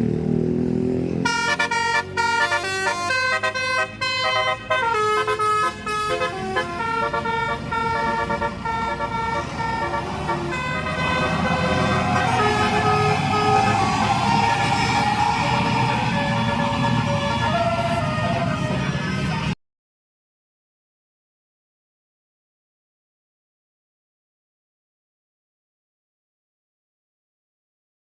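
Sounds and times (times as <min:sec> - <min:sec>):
multi-trumpet bus horn tune: 0:01.2 - 0:19.4
rush of noise: 0:10.0 - 0:19.5.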